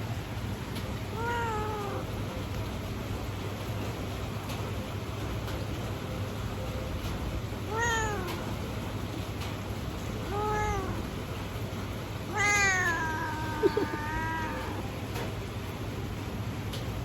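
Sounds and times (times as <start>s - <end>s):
cat meowing: 1.1s - 2.2s, 7.6s - 8.6s, 10.2s - 11.2s, 12.2s - 15.0s.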